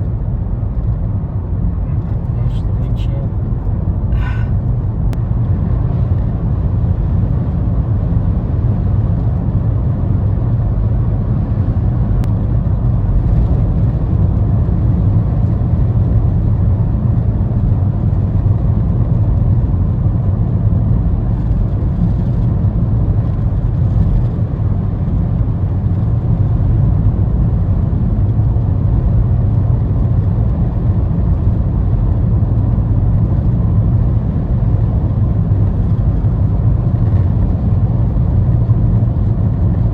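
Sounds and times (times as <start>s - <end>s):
low road rumble inside car: 0.0s - 39.9s.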